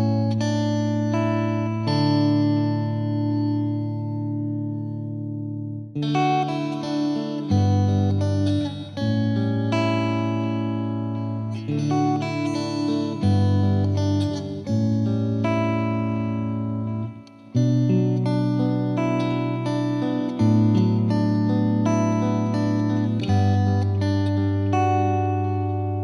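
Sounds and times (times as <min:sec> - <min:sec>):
slow guitar music: 0:00.0 - 0:26.0.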